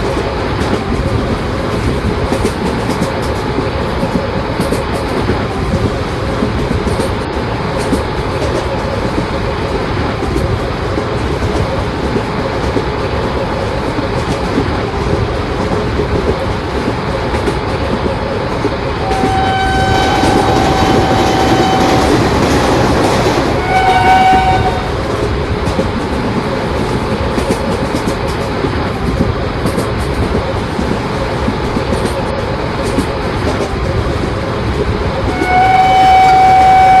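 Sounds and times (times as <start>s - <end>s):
train wheels rumbling on rails: 0.0s - 37.0s
train horn blasts: 19.0s - 25.0s, 35.3s - 37.0s.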